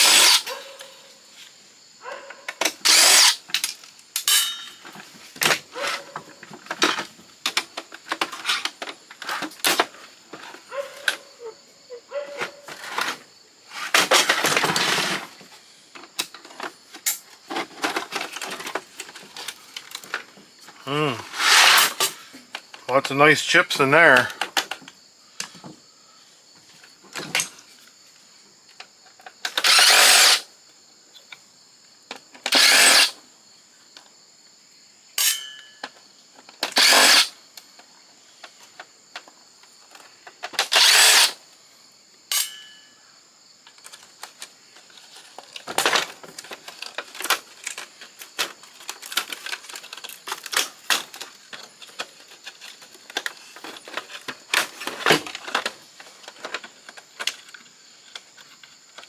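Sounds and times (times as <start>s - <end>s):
power drill spinning screws: 0.0s - 0.5s, 2.8s - 3.4s, 21.4s - 22.0s, 29.6s - 30.4s, 32.5s - 33.2s, 36.7s - 37.3s, 40.6s - 41.4s.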